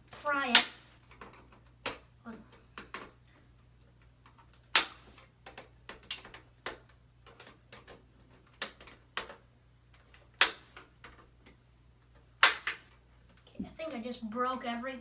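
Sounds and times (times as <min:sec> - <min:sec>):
plastic casing snapping: 0:04.2 - 0:09.4, 0:10.0 - 0:11.6, 0:12.4 - 0:13.0.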